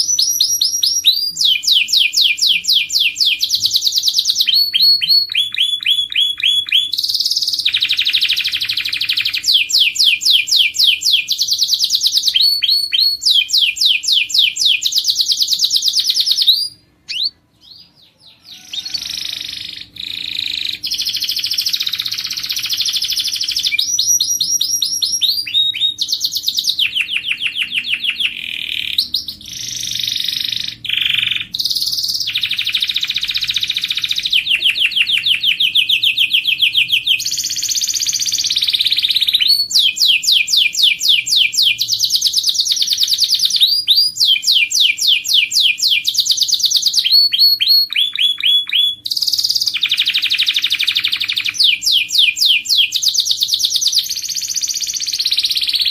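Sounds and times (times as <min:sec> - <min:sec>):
canary singing trills: 0:00.0 - 0:55.9.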